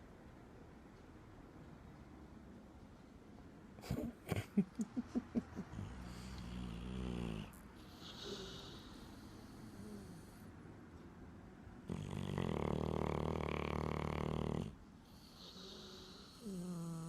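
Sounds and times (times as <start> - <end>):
dog snoring: 5.7 - 10.5, 11.8 - 17.0.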